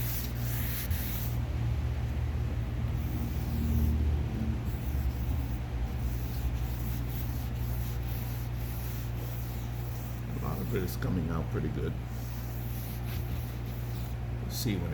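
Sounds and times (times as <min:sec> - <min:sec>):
sandpaper rubbing on car paint: 0:00.0 - 0:01.4, 0:02.9 - 0:04.0, 0:04.6 - 0:11.0, 0:12.1 - 0:14.2
steady low hum: 0:00.0 - 0:14.9.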